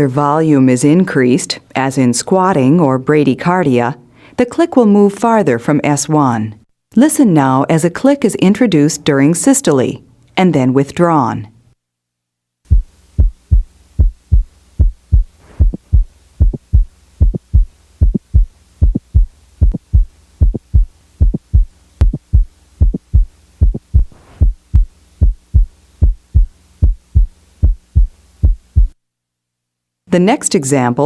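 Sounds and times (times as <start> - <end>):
heart valve click: 12.7 - 29.0
heartbeat through stethoscope: 12.7 - 29.0.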